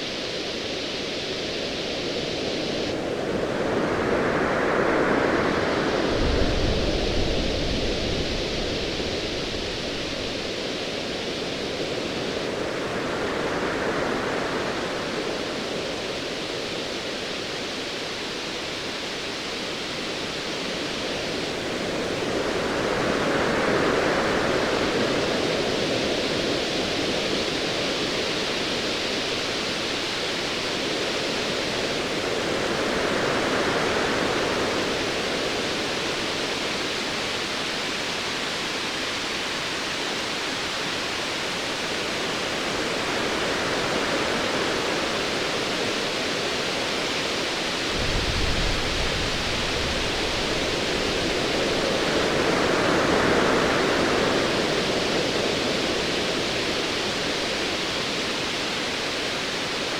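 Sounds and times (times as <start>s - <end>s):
distant thunder rumble: 48.0s - 51.3s.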